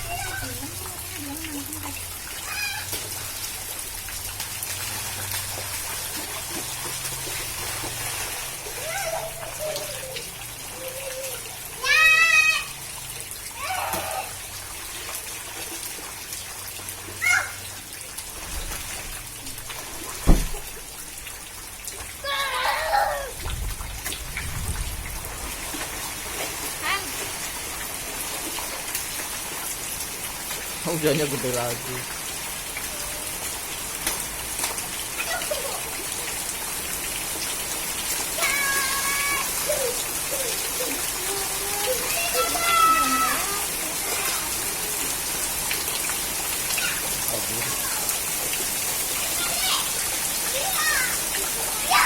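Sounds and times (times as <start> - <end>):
sharp drips: 0.0 - 52.0
steady rain falling: 0.0 - 52.0
child's short high cry: 2.4 - 3.0, 8.8 - 12.7, 13.6 - 14.4, 17.2 - 17.6, 22.2 - 23.4, 38.4 - 43.7
sharp thump: 20.2 - 20.6.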